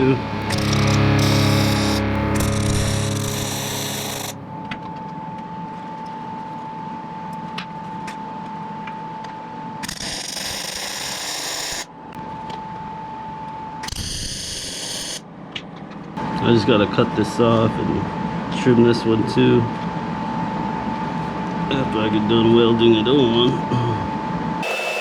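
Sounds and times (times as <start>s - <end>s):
steady high hum: 0.0s - 10.4s, 11.1s - 25.0s
welding arc crackling: 0.4s - 4.4s.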